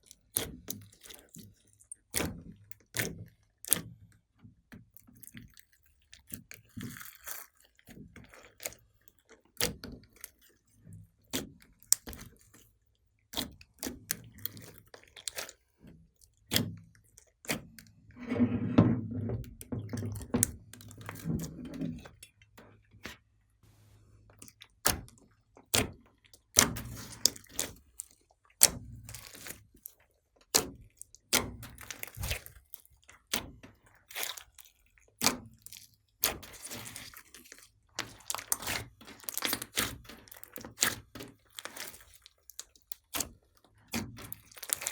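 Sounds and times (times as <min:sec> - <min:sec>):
slime squelching: 0:05.1 - 0:18.8, 0:19.4 - 0:44.9
slime squishing with sticky pops: 0:11.0 - 0:17.8, 0:24.3 - 0:44.9.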